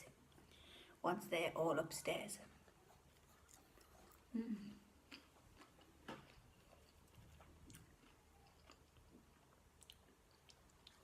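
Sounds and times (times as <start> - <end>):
chewing food: 2.5 - 11.0.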